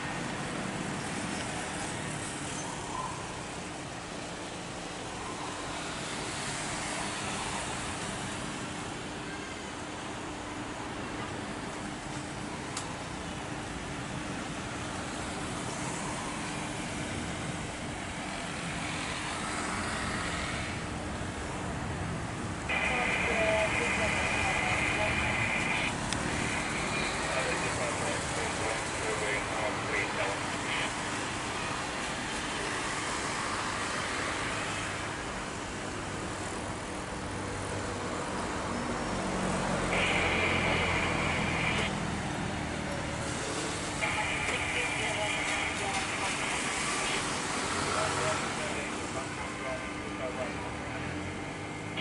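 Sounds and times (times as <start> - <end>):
jet engines rushing: 22.4 - 35.6, 38.5 - 42.5, 43.3 - 50.2.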